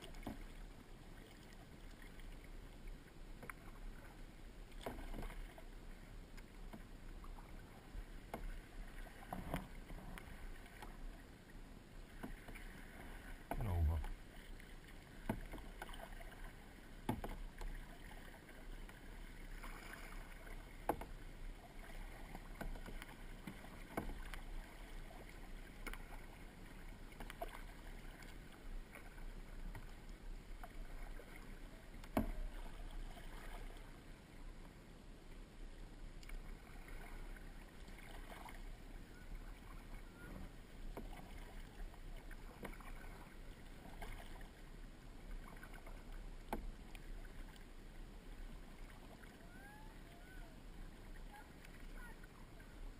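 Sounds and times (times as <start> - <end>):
paddle splashing in water: 0.0 - 34.1, 36.2 - 52.9.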